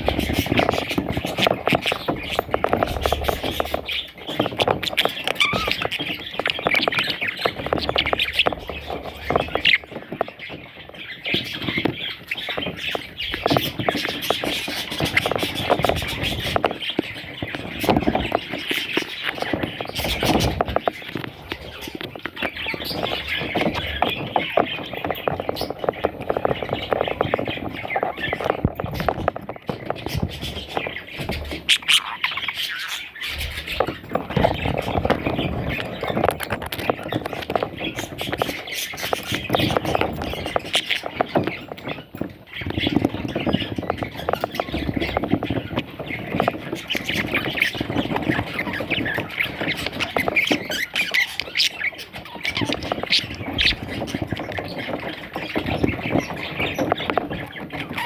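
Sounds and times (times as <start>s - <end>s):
budgerigar chicks squawking: 0.0s - 58.0s.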